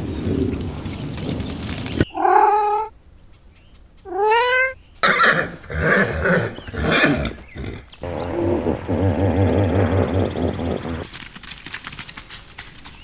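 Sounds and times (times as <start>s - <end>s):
rough animal call: 5.0s - 11.0s.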